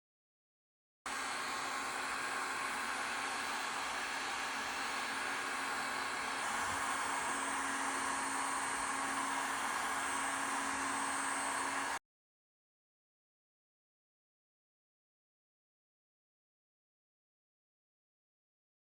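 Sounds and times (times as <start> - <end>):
hot-air blower running: 1.1 - 12.0.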